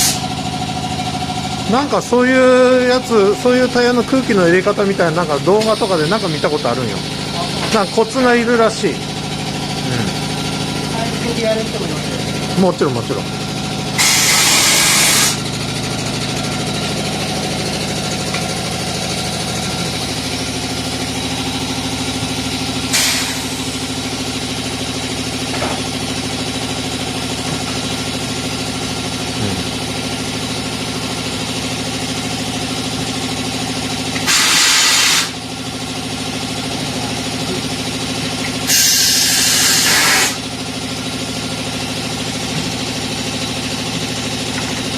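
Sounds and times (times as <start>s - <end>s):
compressed air hissing: 0.0s - 0.2s, 14.0s - 15.4s, 22.9s - 23.8s, 34.2s - 35.4s, 38.6s - 40.4s
air compressor humming: 0.0s - 44.9s.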